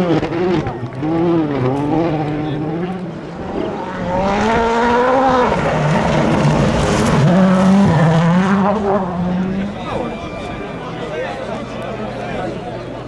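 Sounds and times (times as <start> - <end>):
rally car engine revving: 0.0 - 10.1.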